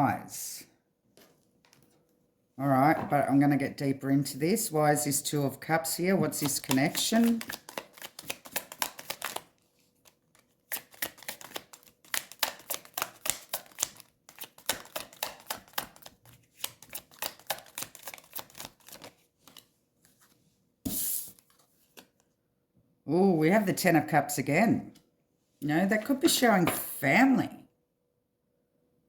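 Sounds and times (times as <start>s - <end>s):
cards being shuffled: 6.2s - 22.2s.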